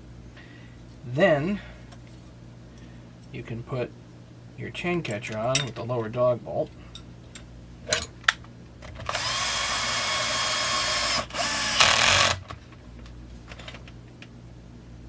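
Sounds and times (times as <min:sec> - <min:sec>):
electric drill driver running: 0:09.0 - 0:12.5.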